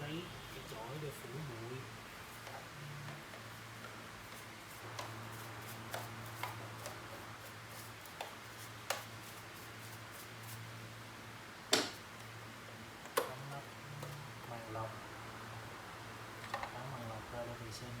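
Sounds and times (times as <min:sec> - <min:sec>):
low steady hum: 0:00.0 - 0:08.1.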